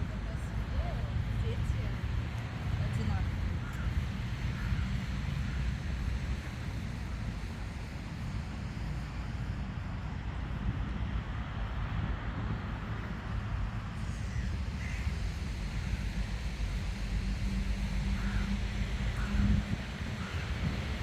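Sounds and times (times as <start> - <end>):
waves: 0.0 - 21.0
wind: 0.0 - 21.0
crow cawing: 3.6 - 5.8, 14.3 - 15.1, 18.2 - 20.7.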